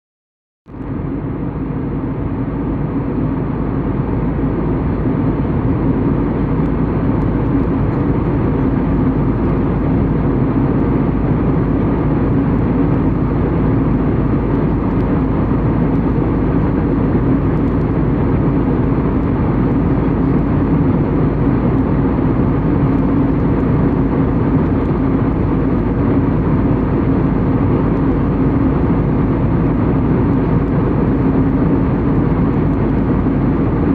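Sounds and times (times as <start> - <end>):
airliner cabin drone: 0.7 - 33.9.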